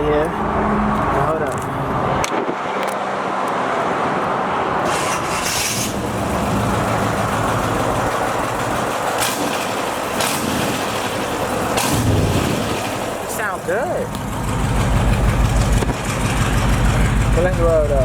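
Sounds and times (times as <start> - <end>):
car engine exhaust note: 5.4 - 18.0.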